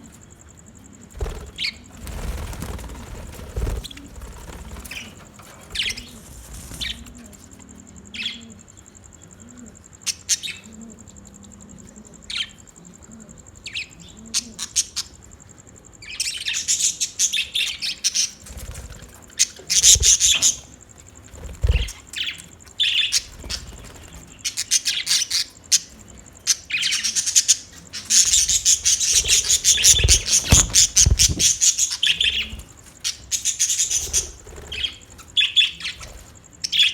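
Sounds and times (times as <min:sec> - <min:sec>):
budgerigars chirping and chattering: 0:01.2 - 0:07.3, 0:16.0 - 0:36.9.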